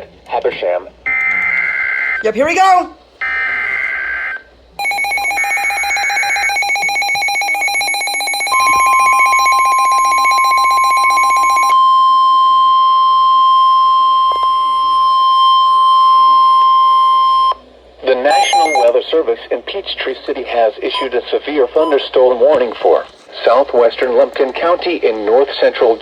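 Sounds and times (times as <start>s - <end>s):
pulsing buzzy electronic alarm: 3.2s - 11.8s, 18.3s - 18.9s
short alert tone: 18.3s - 18.9s
steady high single tone: 18.3s - 18.9s.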